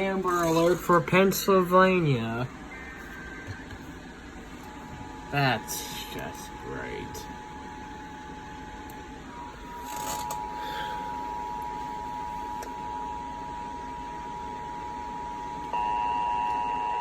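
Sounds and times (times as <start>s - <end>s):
faint steady tone: 2.2s - 17.0s
emergency alert two-tone signal: 10.4s - 17.0s.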